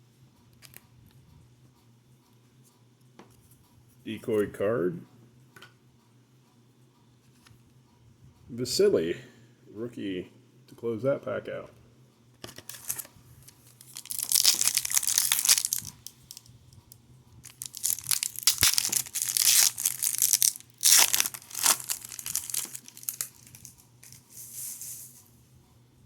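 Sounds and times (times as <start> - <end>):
card pack wrapper crinkling: 12.5 - 16.5, 17.4 - 24.6.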